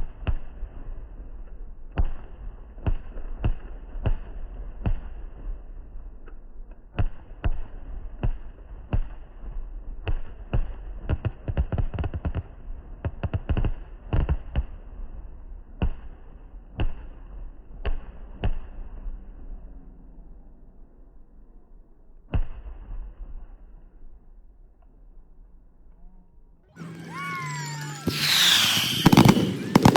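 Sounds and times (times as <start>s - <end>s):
fireworks bangs: 26.8s - 29.9s.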